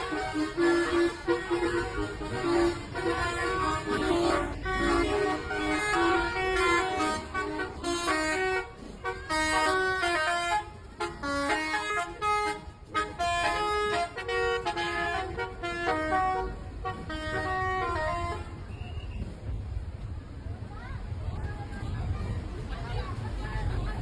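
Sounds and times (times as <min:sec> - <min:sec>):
bus horns playing melodic tunes: 0:00.0 - 0:19.0
low traffic rumble: 0:00.0 - 0:24.0.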